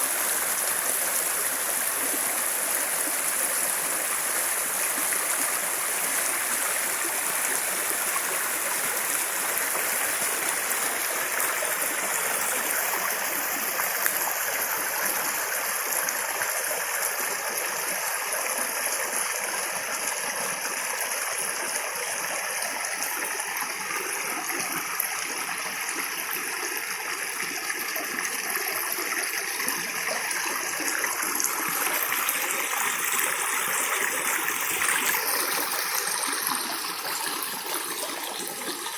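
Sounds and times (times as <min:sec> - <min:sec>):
running water rushing and splashing: 0:00.0 - 0:38.9.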